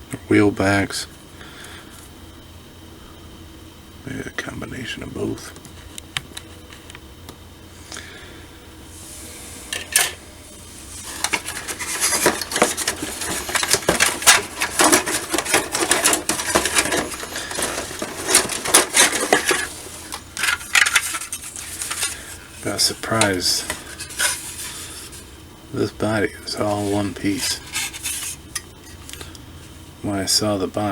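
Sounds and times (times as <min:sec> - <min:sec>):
plastic parts clattering: 0:09.7 - 0:10.2, 0:11.0 - 0:25.2, 0:26.7 - 0:28.6.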